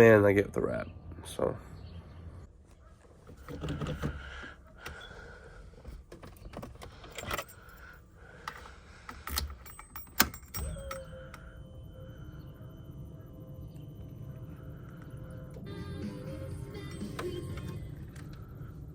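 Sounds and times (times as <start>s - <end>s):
keys jangling: 6.3s - 11.2s.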